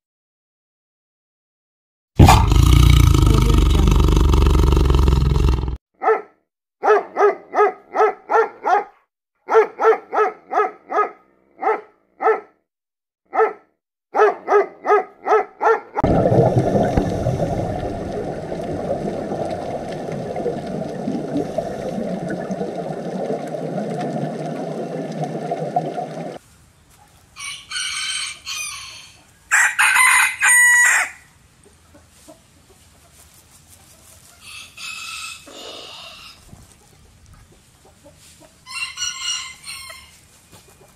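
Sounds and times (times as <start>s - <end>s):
rooster crowing: 27.4s - 31.3s, 34.5s - 36.4s, 38.7s - 40.2s
chickens clucking: 35.4s - 38.6s, 40.5s - 40.9s.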